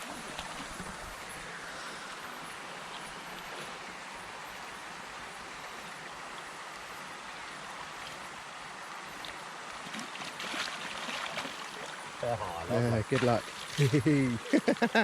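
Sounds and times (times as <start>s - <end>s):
running water: 0.0s - 15.0s
sharp knocks or splashes: 13.1s - 14.0s.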